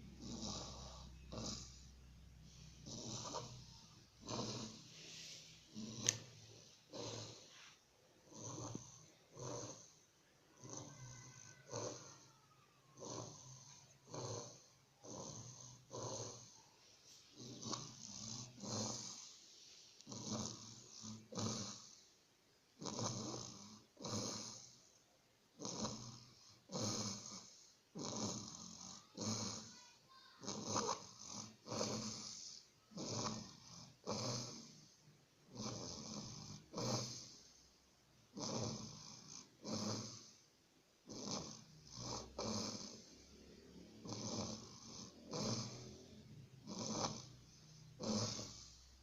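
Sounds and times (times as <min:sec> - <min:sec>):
person snoring: 0:00.0 - 0:22.1, 0:22.8 - 0:25.0, 0:25.6 - 0:37.7, 0:38.3 - 0:49.0.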